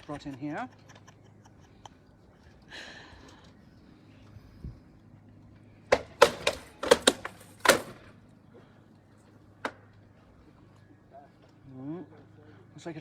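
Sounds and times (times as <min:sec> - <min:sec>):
rattan weapons striking shields: 0:05.9 - 0:08.1.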